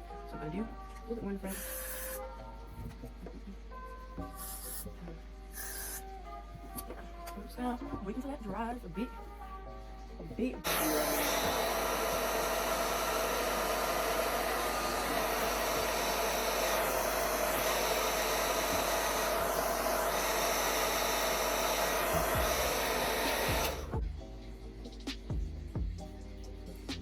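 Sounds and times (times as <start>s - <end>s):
hair dryer blowing: 10.6s - 24.0s.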